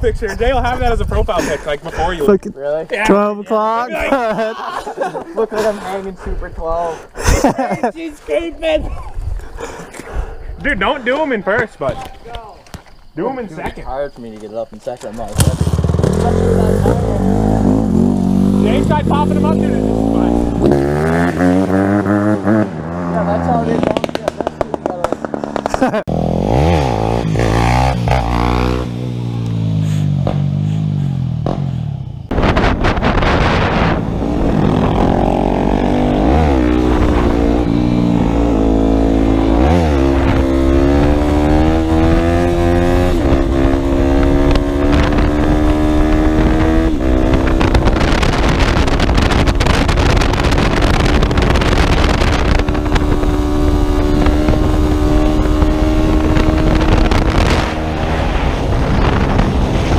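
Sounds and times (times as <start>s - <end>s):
dirt bike engine revving: 15.3s - 59.9s.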